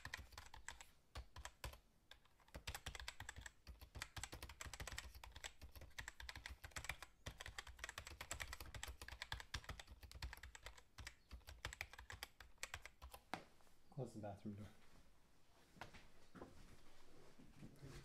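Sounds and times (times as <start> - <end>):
fast typing on keyboard: 0.0 - 13.2.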